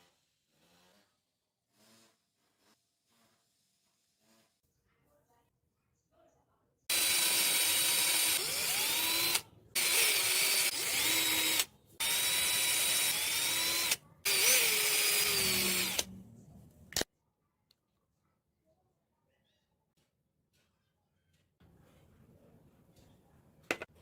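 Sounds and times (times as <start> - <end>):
small electric motor whine: 6.9 - 16.1.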